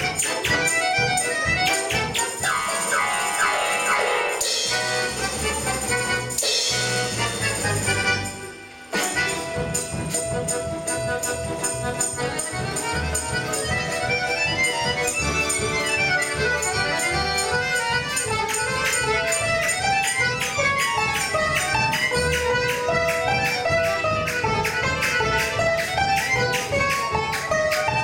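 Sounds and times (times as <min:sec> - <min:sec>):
folk instrument ensemble playing: 0:00.0 - 0:28.0.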